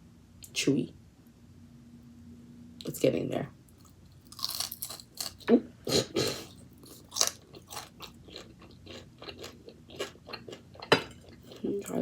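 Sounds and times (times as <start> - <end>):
crunchy chewing: 3.8 - 12.0.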